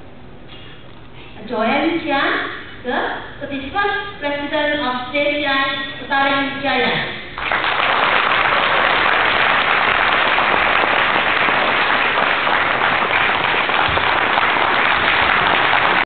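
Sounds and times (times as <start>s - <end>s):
audience applauding: 7.4s - 16.0s.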